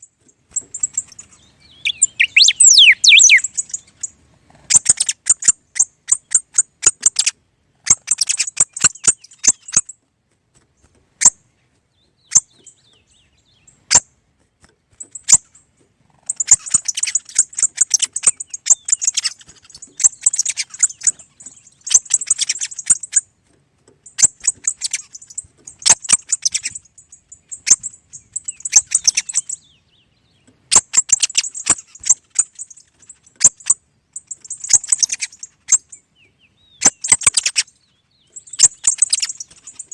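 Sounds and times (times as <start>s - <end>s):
sharp bird clicks and chips: 0.0s - 10.0s, 10.6s - 39.9s
songbirds twittering: 0.0s - 39.9s.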